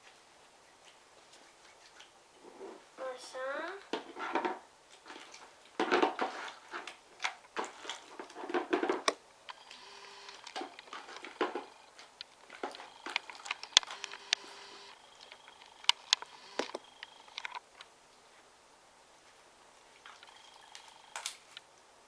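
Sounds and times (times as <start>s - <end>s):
small clicks and pops: 3.7s - 17.9s, 20.0s - 21.8s.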